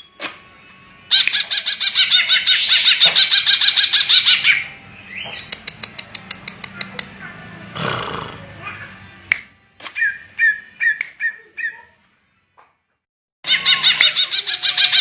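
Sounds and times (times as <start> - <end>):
sharp clicks: 5.4 - 7.1.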